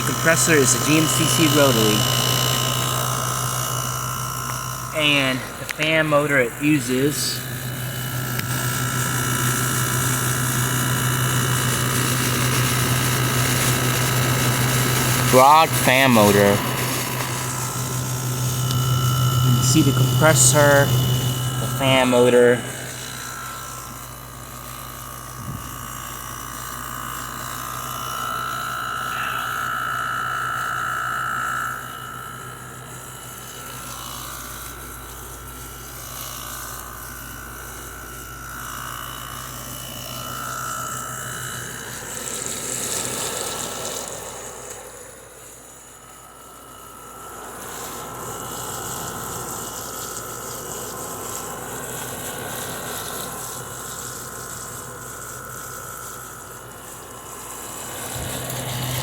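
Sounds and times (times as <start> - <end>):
high whining tone: 0.0 - 10.3, 13.8 - 26.2, 27.2 - 35.0
compressor hum: 0.0 - 59.0
condenser fan whir: 0.0 - 59.0.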